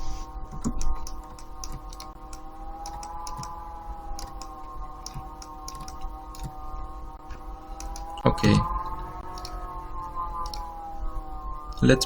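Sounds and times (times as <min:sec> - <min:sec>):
faint steady hum: 0:00.0 - 0:12.0
keyboard and mouse clicks: 0:00.5 - 0:06.6, 0:09.3 - 0:09.6, 0:10.4 - 0:10.7.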